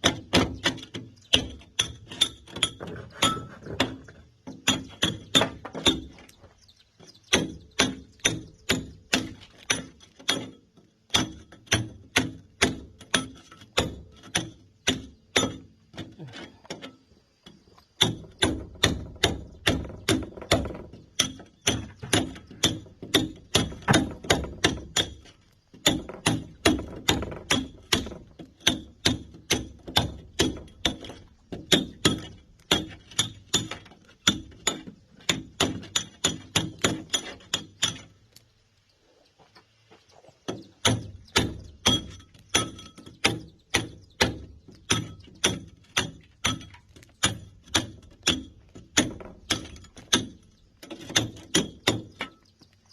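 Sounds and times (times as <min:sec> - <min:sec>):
hammer striking steel chisel: 0:25.8 - 0:38.1.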